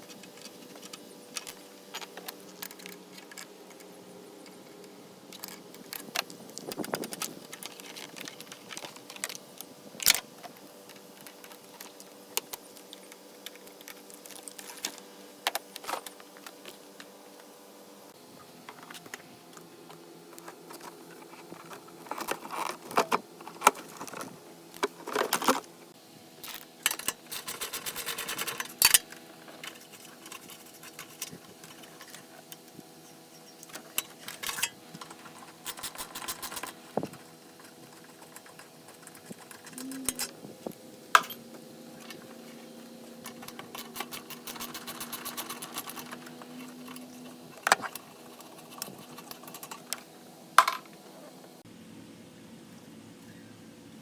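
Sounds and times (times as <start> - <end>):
metal tools clinking: 33.4 - 40.3, 41.1 - 42.3.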